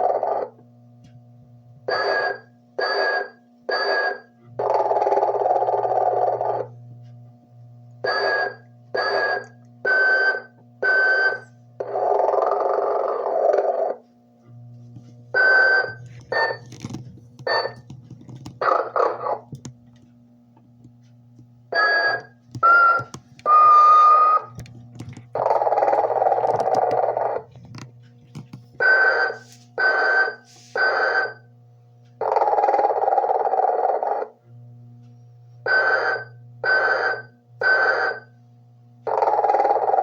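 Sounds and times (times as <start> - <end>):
recorded snoring through small speaker: 0.0 - 0.6, 1.9 - 6.8, 8.1 - 14.0, 15.4 - 16.7, 25.4 - 27.6, 32.2 - 34.4, 35.6 - 38.3, 39.0 - 40.0
steady low hum: 0.0 - 40.0.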